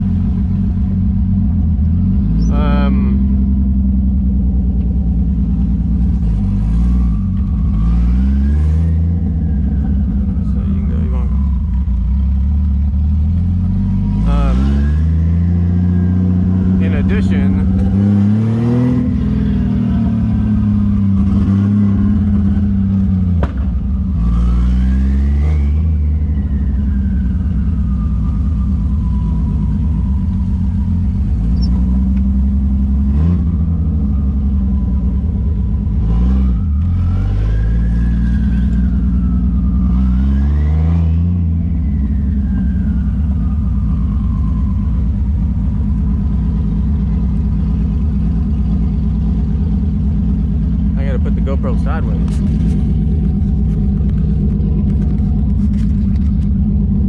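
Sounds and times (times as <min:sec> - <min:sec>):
car engine revving through gears: 0:06.0 - 0:26.3, 0:30.8 - 0:34.2, 0:35.9 - 0:39.0
turbo whistle: 0:31.4 - 0:31.8.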